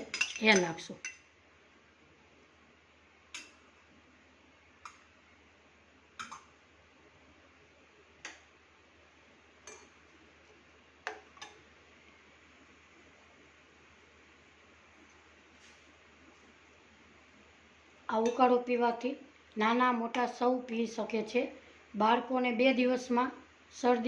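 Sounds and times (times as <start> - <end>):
metal spoon tapping pot: 0.0 - 1.2, 3.3 - 3.6, 6.2 - 6.5, 9.6 - 10.0, 11.0 - 11.6, 18.2 - 18.5
faint steady hiss: 0.0 - 24.0.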